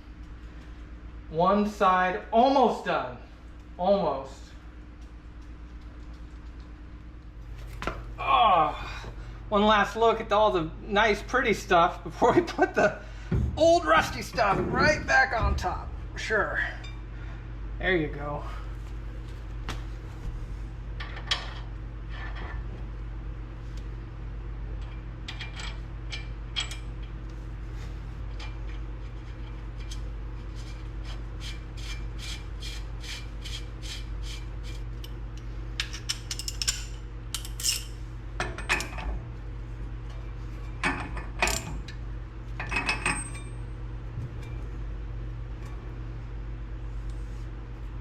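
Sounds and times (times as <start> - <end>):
steady low hum: 0.0 - 48.0
metal tools clinking and knocking: 35.8 - 39.0, 42.6 - 43.6.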